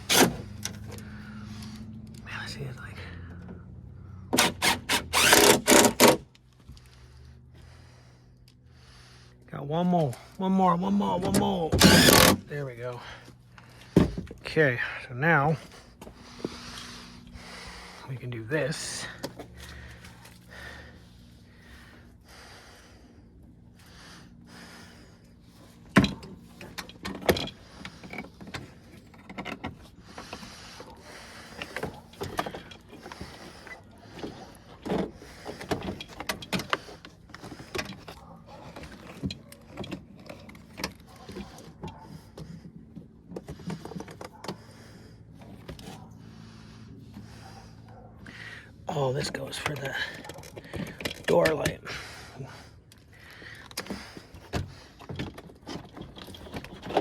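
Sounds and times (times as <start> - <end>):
parts clicking and rattling: 4.3 - 7.0, 11.2 - 12.5, 24.5 - 46.1, 49.2 - 52.1, 52.7 - 57.0.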